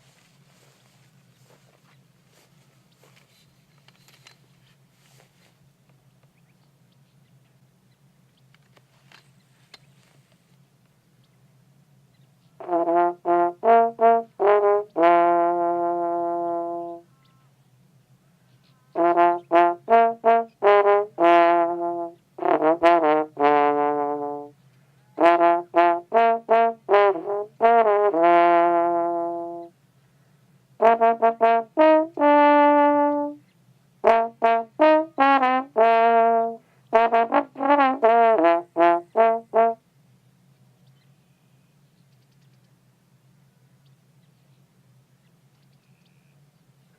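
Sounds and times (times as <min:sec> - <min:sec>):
brass instrument melody: 0:12.6 - 0:17.2, 0:18.8 - 0:29.7, 0:30.8 - 0:33.4, 0:34.0 - 0:39.8.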